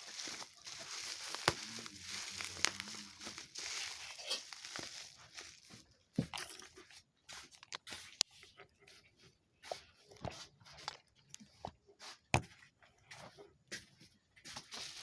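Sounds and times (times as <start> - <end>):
plastic packaging crinkling: 0.0 - 5.9, 14.7 - 15.0.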